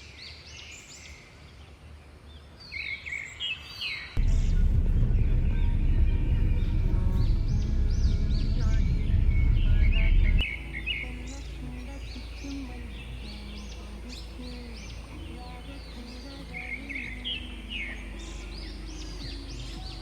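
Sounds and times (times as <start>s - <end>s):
birds chirping: 0.0s - 20.0s
loud low-pitched sound: 4.2s - 13.2s
low steady hum: 4.2s - 20.0s.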